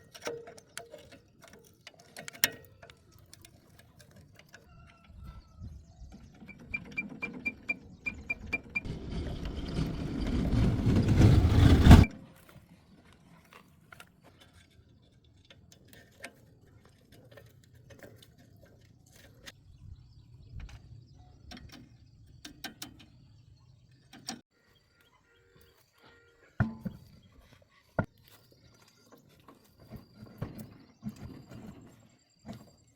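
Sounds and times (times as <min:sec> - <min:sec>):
loud machine noise: 0:08.5 - 0:12.1.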